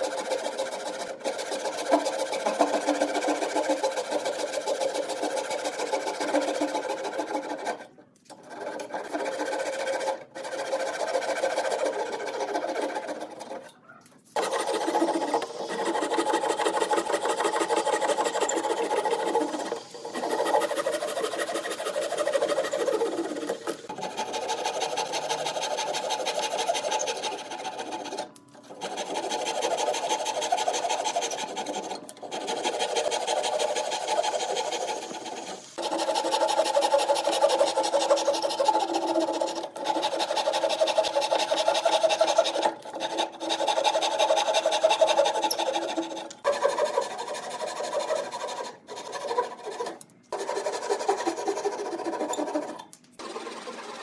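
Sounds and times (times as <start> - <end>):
sewing machine stitching: 14.4 - 24.3.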